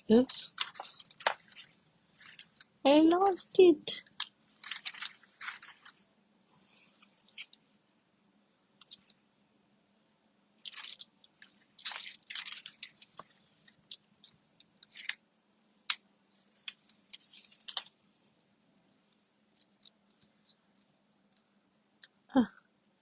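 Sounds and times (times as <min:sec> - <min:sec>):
paper rustling and crinkling: 0:00.3 - 0:06.0, 0:06.7 - 0:07.7, 0:10.6 - 0:15.2, 0:16.4 - 0:18.0.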